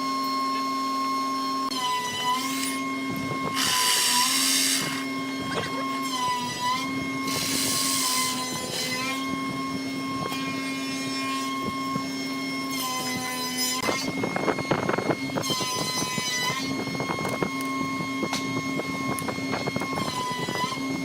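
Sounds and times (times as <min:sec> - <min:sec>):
power tool whining: 0:01.6 - 0:21.0
hissing cutting noise: 0:02.3 - 0:05.1, 0:07.2 - 0:09.2.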